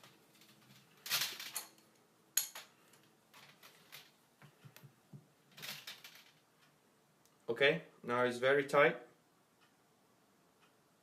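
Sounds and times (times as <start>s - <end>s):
wrench clinking and scraping: 1.1s - 3.0s.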